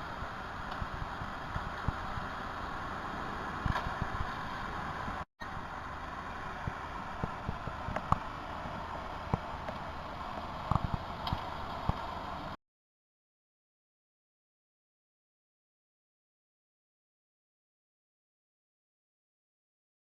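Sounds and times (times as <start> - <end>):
steady rushing noise: 0.0 - 12.6.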